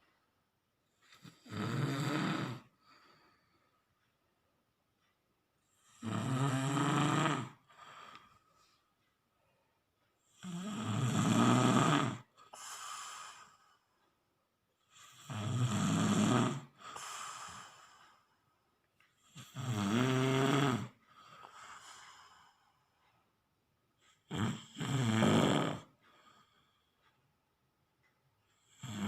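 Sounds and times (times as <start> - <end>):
quiet breath out: 0.9 - 4.0, 7.5 - 9.8, 12.4 - 14.1, 16.6 - 18.6, 21.0 - 23.3, 25.8 - 27.2
loud buzzing snores: 1.2 - 2.7, 5.8 - 7.6, 10.3 - 13.5, 14.9 - 17.7, 19.3 - 21.0, 24.2 - 26.0, 28.6 - 29.0.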